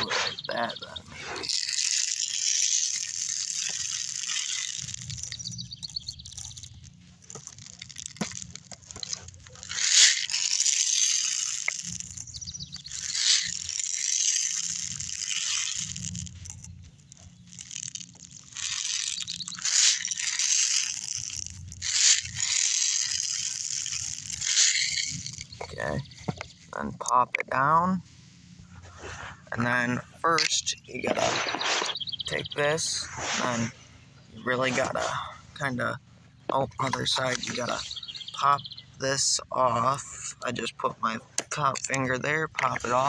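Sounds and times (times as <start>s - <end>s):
sharp clicks: 0.0s - 27.5s
magazine handling rustle: 1.4s - 26.8s, 30.4s - 32.2s.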